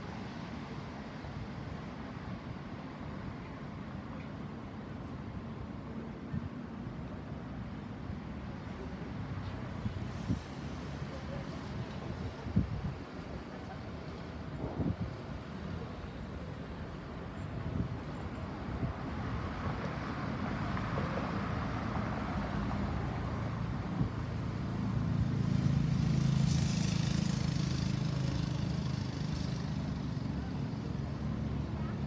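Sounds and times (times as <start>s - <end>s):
vehicles passing: 19.2s - 32.0s.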